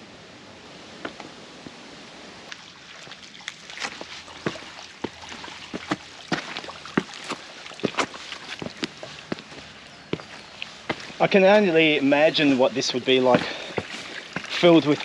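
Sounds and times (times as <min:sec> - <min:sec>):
footsteps on rocks and gravel: 0:03.5 - 0:15.0.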